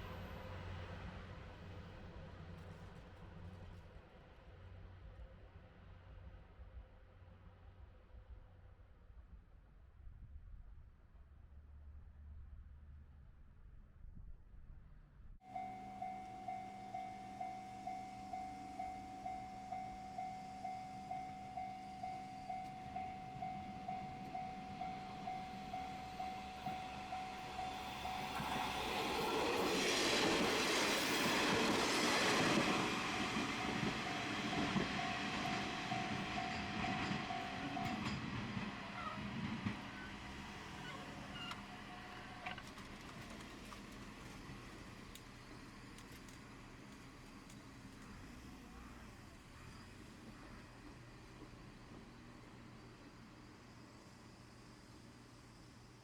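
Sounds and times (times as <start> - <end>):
level-crossing alarm bell ringing: 15.4 - 38.6
train wheels rumbling on rail: 15.6 - 56.0.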